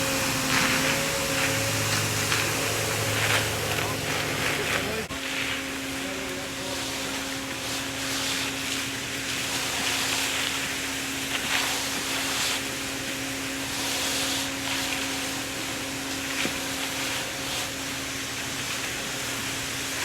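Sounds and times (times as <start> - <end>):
motor humming: 0.0 - 5.2.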